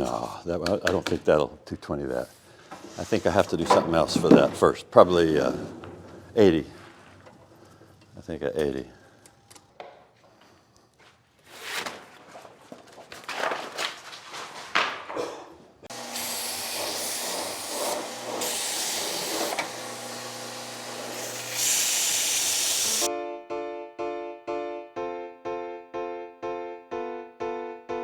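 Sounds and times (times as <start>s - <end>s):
power sander running: 15.9s - 23.1s
light piano music: 23.1s - 28.0s.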